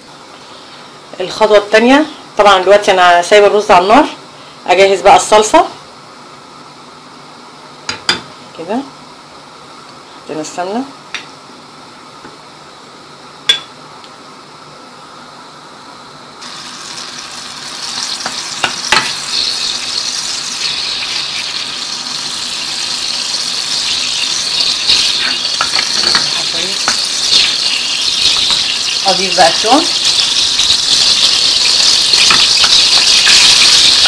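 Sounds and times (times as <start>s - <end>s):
fat sizzling in a pan: 16.4s - 34.0s.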